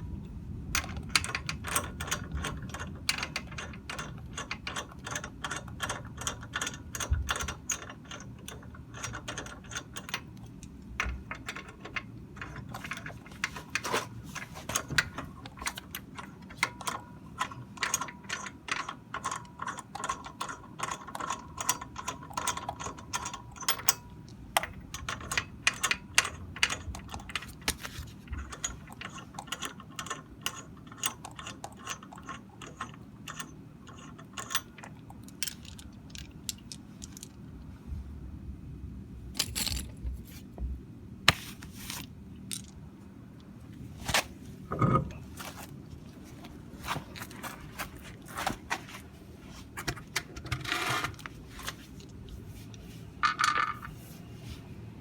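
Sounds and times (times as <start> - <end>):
metallic clicks and knocks: 0.8 - 37.4.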